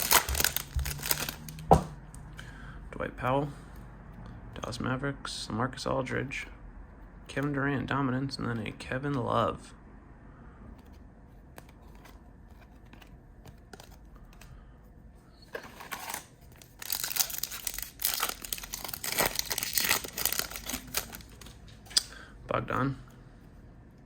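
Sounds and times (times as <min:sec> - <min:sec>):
plastic wrapper tearing and crinkling: 0:00.0 - 0:01.7, 0:15.6 - 0:21.6.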